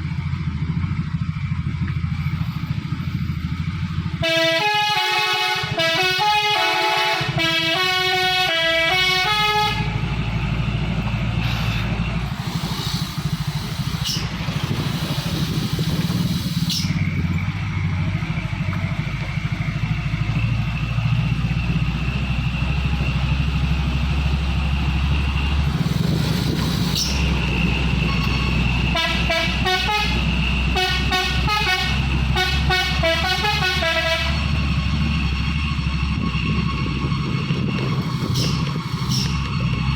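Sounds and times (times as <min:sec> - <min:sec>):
heavy engine rumble: 0:00.0 - 0:39.9
musical truck horn tune: 0:04.2 - 0:10.1, 0:28.0 - 0:34.6.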